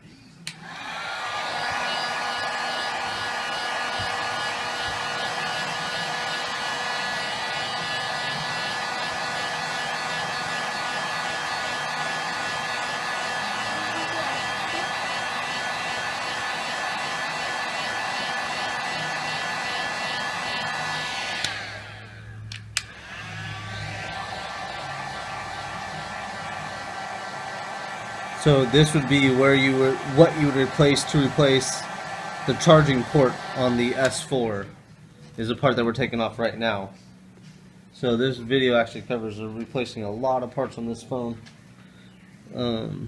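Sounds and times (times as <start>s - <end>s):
heat gun motor whine: 0.5s - 22.1s
heat gun blowing air: 0.5s - 22.2s
heat gun switch click: 22.5s - 22.9s.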